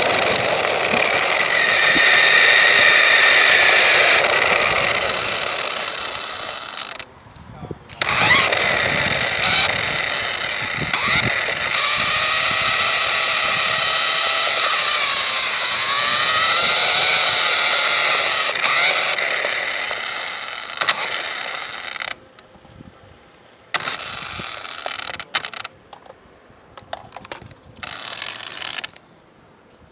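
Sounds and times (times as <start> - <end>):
small electric motor whining: 0.0 - 29.2.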